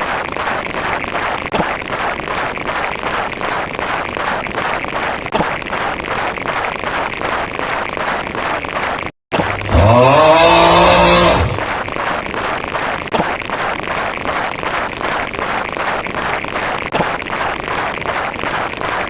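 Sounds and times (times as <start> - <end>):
engine-like sound effect spinning up: 9.4 - 11.8.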